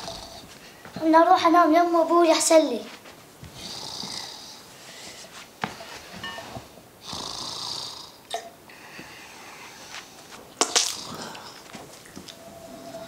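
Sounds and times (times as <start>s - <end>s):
man snoring: 0.0s - 0.4s, 3.6s - 4.6s, 7.0s - 9.9s, 10.8s - 11.6s.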